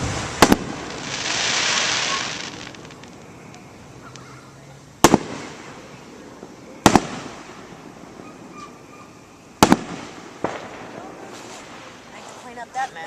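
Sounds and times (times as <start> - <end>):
fireworks booming: 0.0 - 4.2, 4.9 - 12.6.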